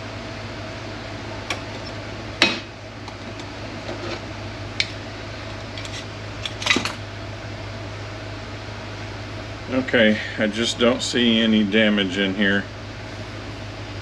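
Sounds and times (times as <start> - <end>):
steady shop hum: 0.0 - 14.0.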